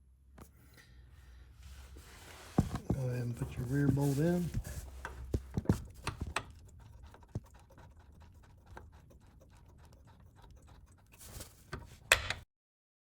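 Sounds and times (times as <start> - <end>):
bolt clicking and scraping: 4.6 - 8.9, 10.4 - 12.4.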